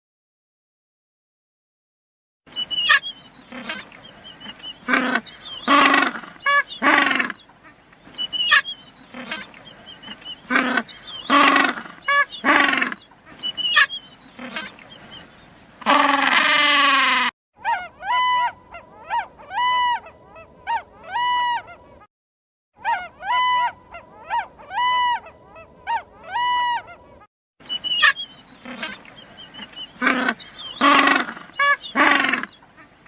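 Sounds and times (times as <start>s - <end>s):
honk-like animal calls: 2.6s - 14.8s, 15.8s - 18.4s, 27.8s - 32.9s
harsh animal calls: 2.6s - 15.2s, 15.8s - 17.9s, 27.7s - 33.0s.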